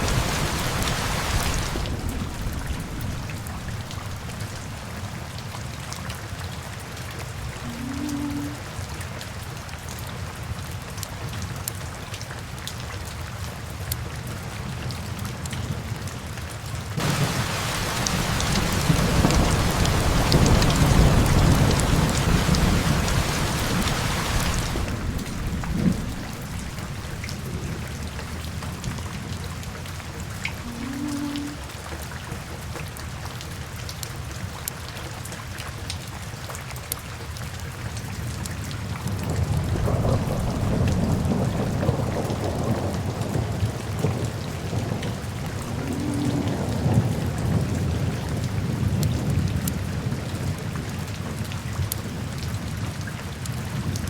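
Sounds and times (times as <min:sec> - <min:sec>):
rolling thunder rumble: 0:00.0 - 0:05.7, 0:17.0 - 0:31.4, 0:39.0 - 0:49.5
steady rain: 0:00.0 - 0:54.0.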